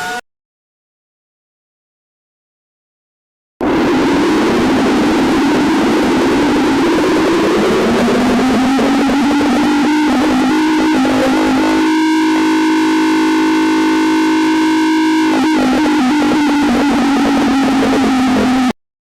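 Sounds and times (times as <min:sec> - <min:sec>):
distorted electronic alarm tone: 0:00.0 - 0:00.2, 0:03.6 - 0:18.8
higher alarm chord: 0:03.6 - 0:18.7.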